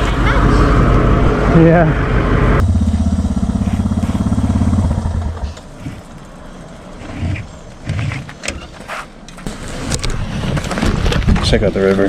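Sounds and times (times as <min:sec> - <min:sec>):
bus engine idling: 0:00.0 - 0:09.3.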